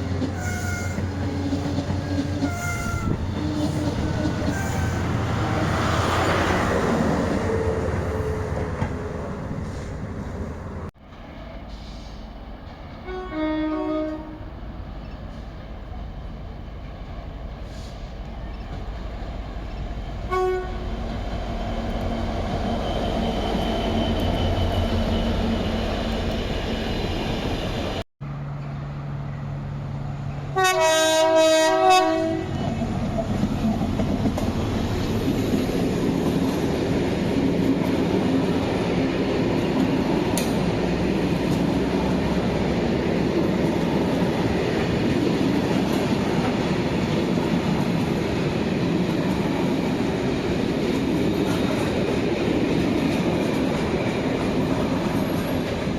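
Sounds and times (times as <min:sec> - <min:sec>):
train horns: 0:00.0 - 0:10.2, 0:13.0 - 0:14.5, 0:20.3 - 0:21.0, 0:30.5 - 0:32.8
train running on rails: 0:00.0 - 0:55.9.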